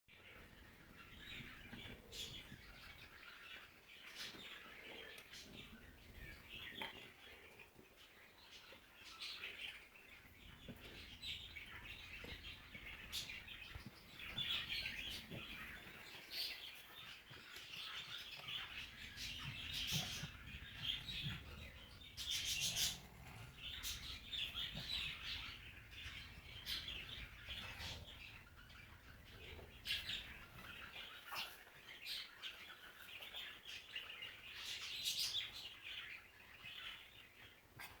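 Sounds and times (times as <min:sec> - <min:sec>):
animal snorting and breathing: 0:19.2 - 0:25.6.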